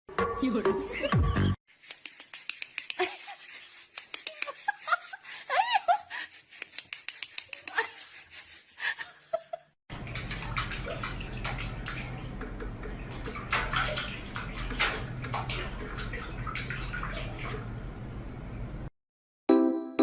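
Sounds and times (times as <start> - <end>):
water running and splashing: 9.9 - 18.0.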